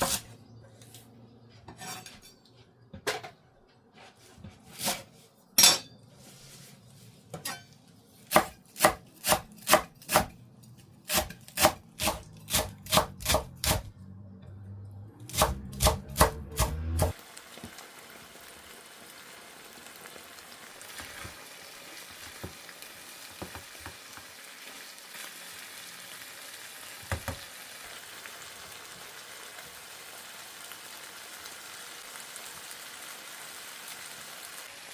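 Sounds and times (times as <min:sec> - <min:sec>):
knife chopping on cutting board: 0:08.3 - 0:10.4, 0:11.1 - 0:13.9, 0:15.3 - 0:17.1.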